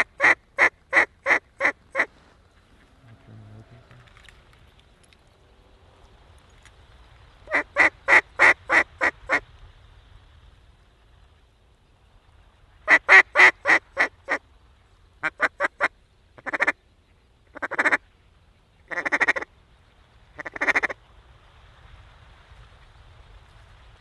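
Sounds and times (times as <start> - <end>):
duck call quacking: 15.2 - 16.8, 18.9 - 19.5, 20.4 - 21.0.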